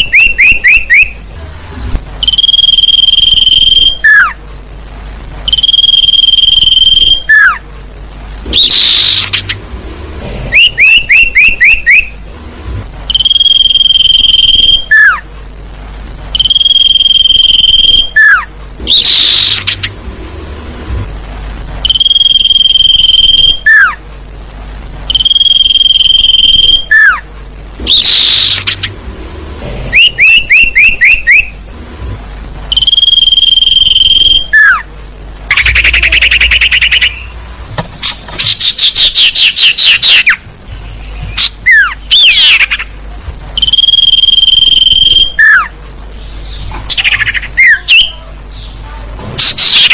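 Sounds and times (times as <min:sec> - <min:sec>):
whistled bird notes: 0:00.0 - 0:01.2, 0:02.2 - 0:04.4, 0:06.6 - 0:07.6, 0:08.5 - 0:09.6, 0:10.5 - 0:12.2, 0:13.1 - 0:15.2, 0:16.4 - 0:19.9, 0:21.8 - 0:24.0, 0:26.0 - 0:27.2, 0:27.9 - 0:28.9, 0:29.9 - 0:31.7, 0:34.0 - 0:34.8, 0:38.4 - 0:42.8, 0:43.6 - 0:45.7, 0:49.4 - 0:49.9
faint insect trilling: 0:05.5 - 0:07.6, 0:13.1 - 0:15.2, 0:16.3 - 0:20.0
falling bird chirps: 0:38.0 - 0:43.0.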